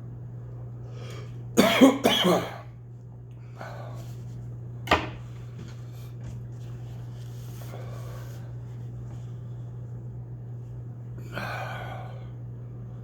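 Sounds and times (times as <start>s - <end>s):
steady low hum: 0.0s - 13.0s
man coughing: 1.6s - 2.7s.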